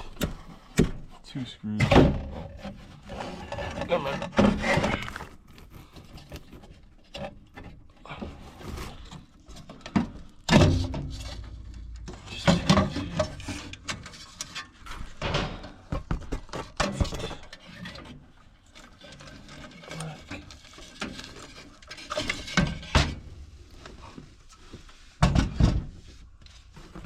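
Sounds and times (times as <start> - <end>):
heavy metal clunk: 10.0 - 14.1.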